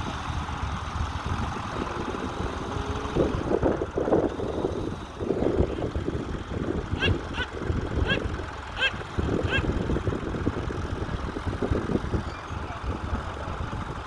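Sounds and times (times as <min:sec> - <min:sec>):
tractor diesel engine running: 0:00.0 - 0:14.0
bird calls: 0:06.9 - 0:09.8, 0:12.1 - 0:13.3.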